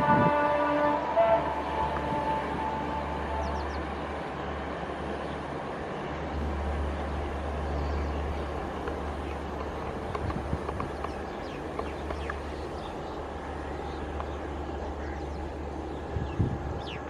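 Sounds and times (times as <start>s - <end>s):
locomotive horn: 0.0s - 4.0s
train rushing past: 0.0s - 17.0s.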